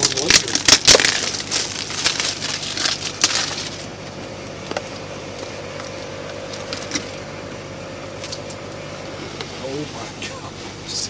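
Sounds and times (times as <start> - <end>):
box and packing rustling: 0.0 - 7.3
steady hum with faint whine: 0.0 - 11.0.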